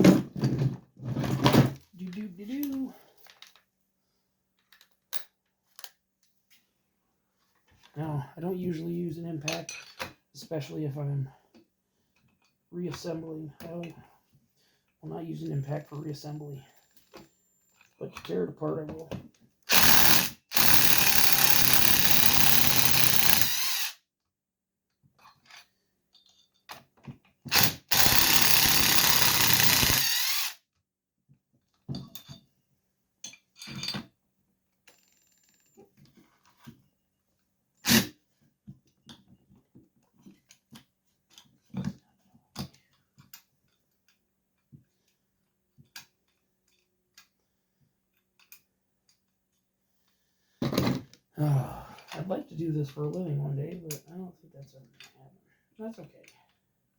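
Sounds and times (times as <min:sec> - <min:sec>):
clinks of parts and tools: 0:01.2 - 0:03.7, 0:04.6 - 0:06.0, 0:09.5 - 0:10.2, 0:25.2 - 0:30.0, 0:31.7 - 0:32.5, 0:33.2 - 0:34.2, 0:45.8 - 0:47.4, 0:48.1 - 0:49.6
impact driver running: 0:19.7 - 0:24.0, 0:27.5 - 0:30.6.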